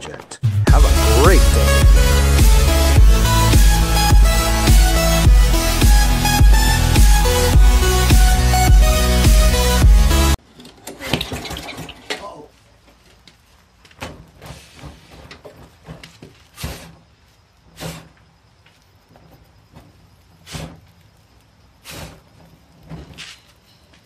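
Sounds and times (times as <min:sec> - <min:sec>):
handling scrapes and knocks: 0:11.7 - 0:21.0, 0:21.8 - 0:24.0.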